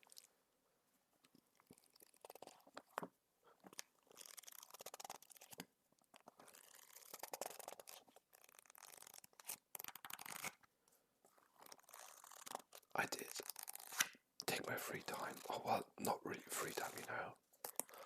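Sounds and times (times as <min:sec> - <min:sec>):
fingers scratching and rustling on books: 0:01.3 - 0:14.2.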